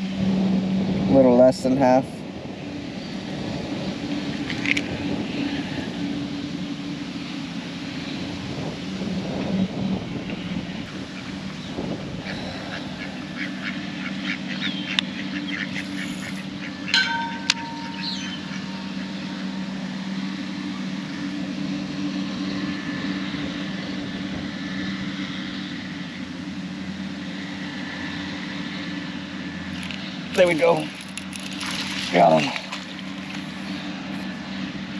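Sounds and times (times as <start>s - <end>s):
steady low hum: 0.0s - 34.9s
bird calls: 10.9s - 19.8s.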